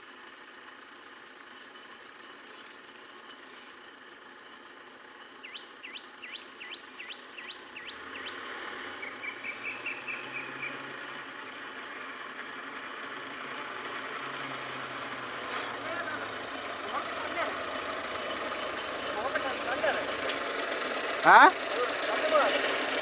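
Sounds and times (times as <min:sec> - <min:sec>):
insects chirping: 0:00.0 - 0:23.0
vehicle engine low hum: 0:00.0 - 0:23.0
bird trill: 0:04.7 - 0:13.0
bird whistling: 0:05.4 - 0:10.9.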